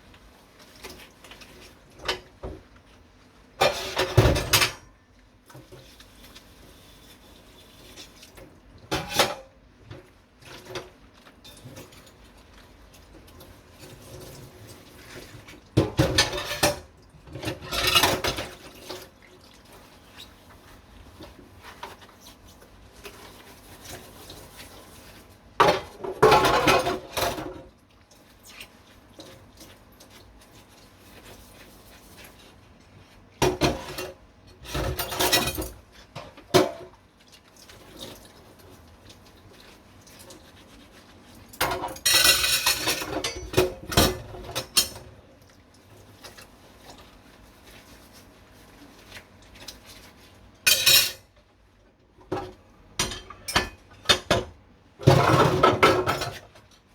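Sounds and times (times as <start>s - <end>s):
scrubbing dishes: 3.5s - 4.9s, 7.8s - 51.3s, 52.2s - 56.8s
dishes clattering: 25.6s - 27.6s, 41.6s - 45.0s, 50.7s - 51.2s, 53.0s - 56.4s.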